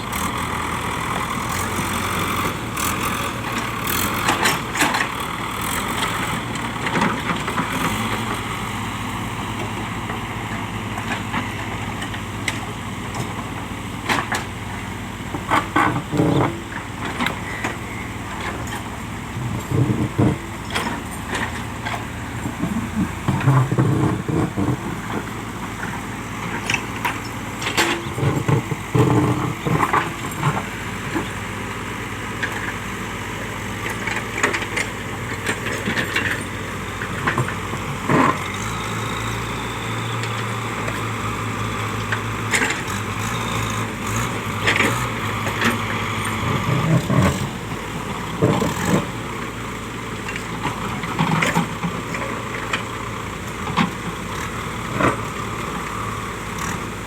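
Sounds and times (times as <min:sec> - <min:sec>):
diesel engine running: 0:00.0 - 0:57.0
rocks knocking and clanking: 0:26.6 - 0:31.3.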